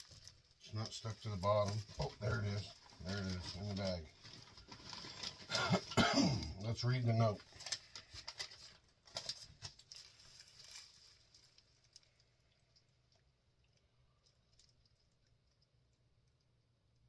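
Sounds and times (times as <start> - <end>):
bag and paper rustling: 0.0 - 6.5, 7.1 - 11.6.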